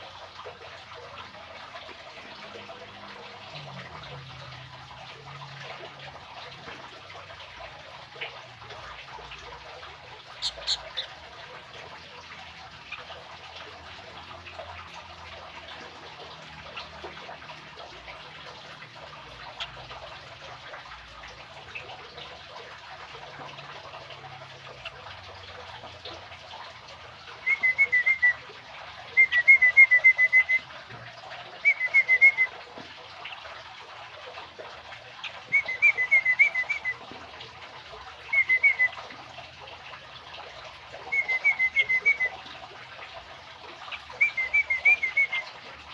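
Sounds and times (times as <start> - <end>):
bird chirping: 10.3 - 11.2.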